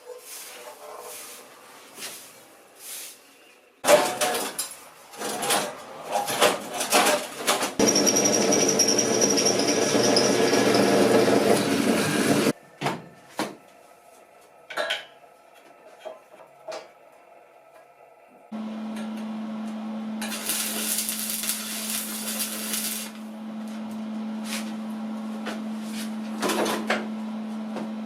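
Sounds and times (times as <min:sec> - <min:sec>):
small motor running: 0:07.8 - 0:12.5.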